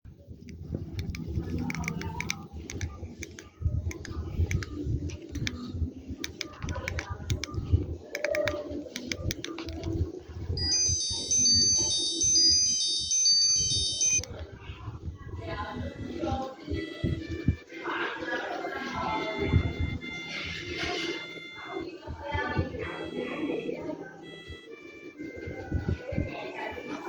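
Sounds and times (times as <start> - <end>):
phone keypad buttons clicking: 1.0 - 5.6, 6.2 - 9.9
electronic ringtone melody: 8.2 - 14.3, 15.7 - 27.0.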